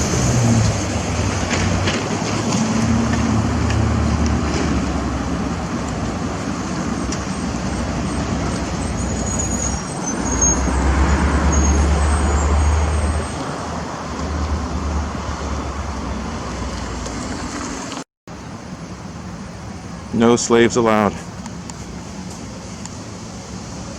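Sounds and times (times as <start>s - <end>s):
vehicle passing close: 0.0s - 18.0s
road traffic passing: 0.0s - 23.9s.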